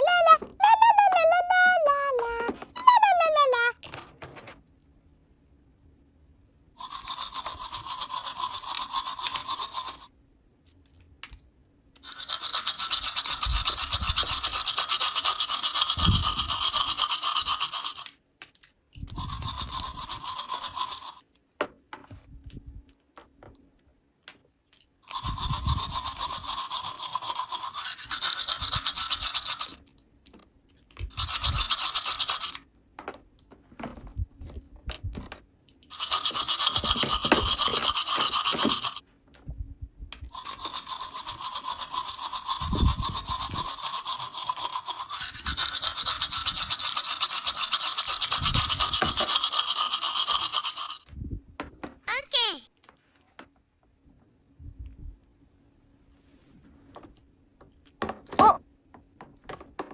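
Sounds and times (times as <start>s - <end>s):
toy motor buzzing: 0.0s - 3.8s, 6.8s - 10.1s, 12.0s - 18.2s, 19.0s - 21.3s, 25.0s - 29.9s, 31.0s - 32.7s, 35.9s - 39.0s, 40.3s - 51.1s.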